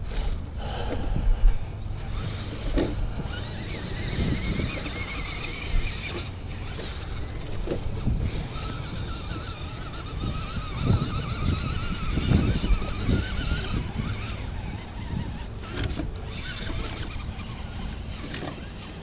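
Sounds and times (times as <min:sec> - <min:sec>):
electric motor and gearbox whine: 0:00.0 - 0:19.0
wind rumble on microphone: 0:00.0 - 0:19.0.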